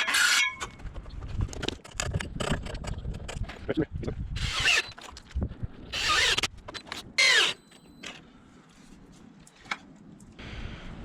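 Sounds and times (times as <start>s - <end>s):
cordless drill driving screws: 4.4s - 5.0s, 5.9s - 6.5s, 7.2s - 7.6s.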